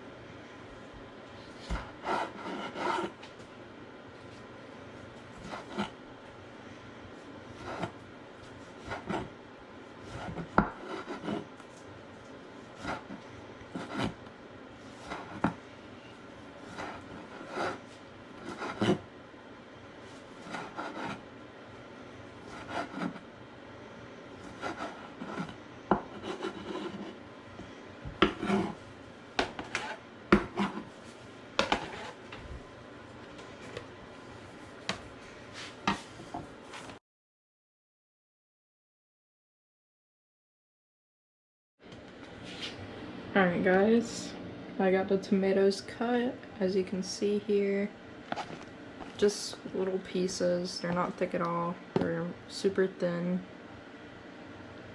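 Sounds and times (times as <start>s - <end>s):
knife scraping strokes: 1.6s - 3.2s, 10.1s - 11.5s, 16.6s - 19.0s, 20.4s - 21.2s, 22.4s - 23.2s, 24.4s - 27.2s, 28.2s - 28.8s, 29.6s - 31.0s, 31.6s - 32.2s.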